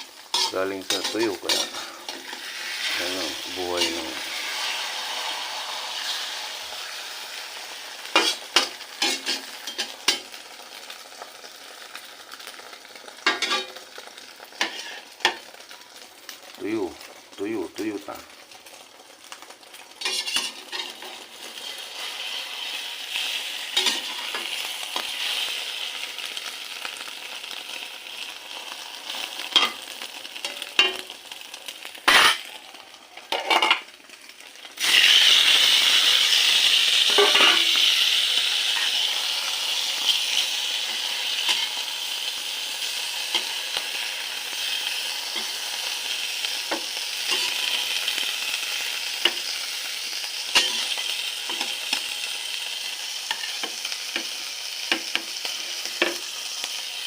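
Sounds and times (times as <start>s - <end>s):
egg sizzling in frying pan: 0.0s - 57.0s
spatula scraping pan: 0.3s - 3.0s, 14.6s - 15.4s, 20.0s - 25.5s, 32.1s - 32.5s, 37.1s - 37.8s, 50.5s - 51.7s.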